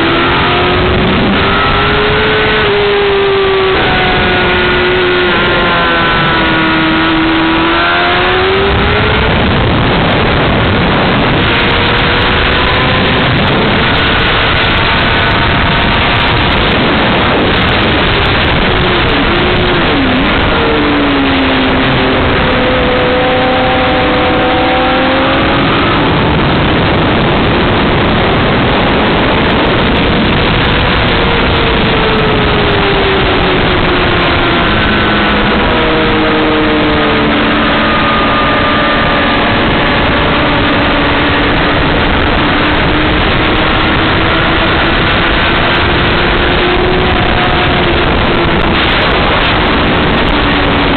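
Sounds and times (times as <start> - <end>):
motorcycle engine revving: 0.0 - 50.9
wind noise on microphone: 0.0 - 50.9.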